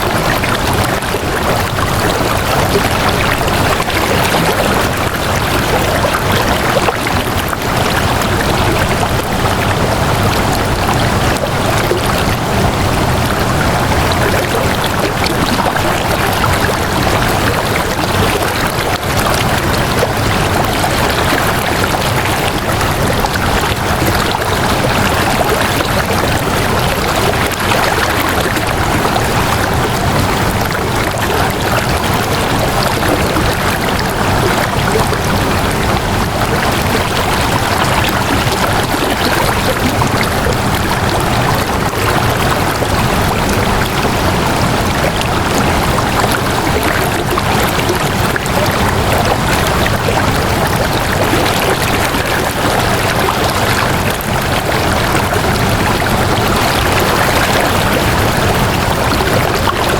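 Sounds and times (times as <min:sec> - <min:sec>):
water rushing: 0:00.0 - 0:59.9.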